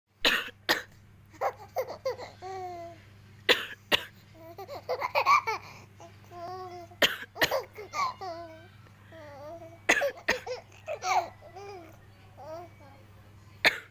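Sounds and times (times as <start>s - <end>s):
woman coughing: 0.2s - 0.9s, 3.5s - 4.2s, 7.0s - 7.7s, 9.9s - 11.3s, 13.6s - 13.9s.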